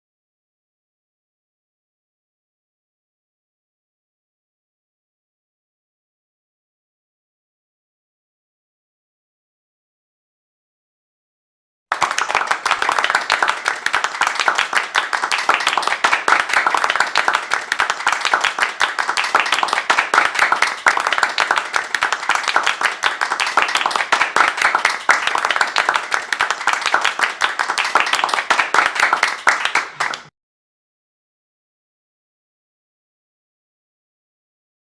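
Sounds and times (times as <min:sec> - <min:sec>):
crowd applauding: 0:11.9 - 0:30.3.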